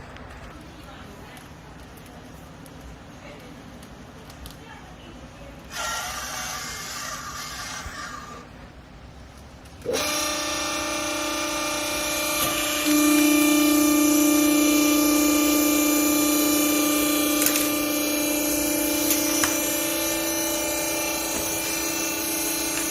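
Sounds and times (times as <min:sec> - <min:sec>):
electric motor and pump humming: 0:05.4 - 0:22.9.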